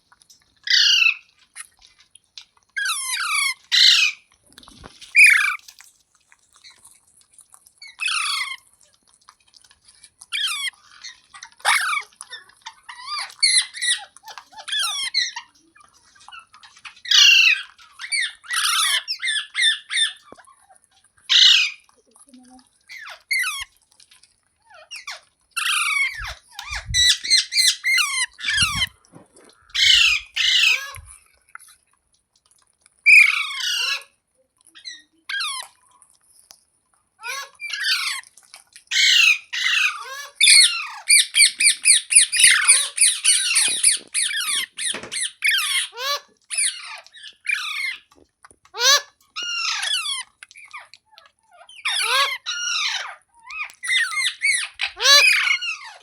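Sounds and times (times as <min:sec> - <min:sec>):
parrot screeching: 0:00.7 - 0:01.2, 0:02.8 - 0:04.2, 0:05.2 - 0:05.6, 0:07.9 - 0:08.6, 0:10.3 - 0:12.1, 0:12.7 - 0:15.4, 0:16.3 - 0:20.3, 0:21.3 - 0:21.8, 0:22.9 - 0:23.7, 0:24.7 - 0:31.2, 0:33.0 - 0:34.1, 0:34.8 - 0:35.7, 0:37.2 - 0:38.2, 0:38.9 - 0:48.1, 0:48.8 - 0:50.9, 0:51.5 - 0:56.0.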